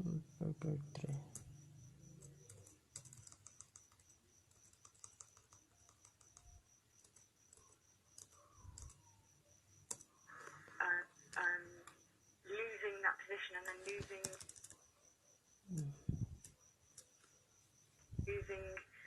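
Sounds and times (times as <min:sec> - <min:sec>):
faint keyboard typing: 0:00.8 - 0:12.1, 0:13.5 - 0:15.0, 0:15.7 - 0:17.4.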